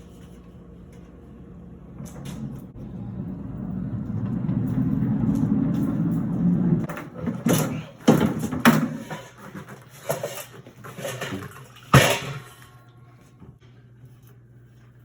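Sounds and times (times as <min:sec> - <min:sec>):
faint hum: 0:00.0 - 0:06.9, 0:12.1 - 0:15.0.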